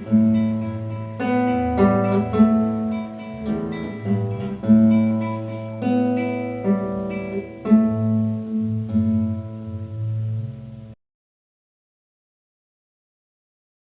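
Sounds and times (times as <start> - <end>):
acoustic guitar playing: 0.0 - 11.0.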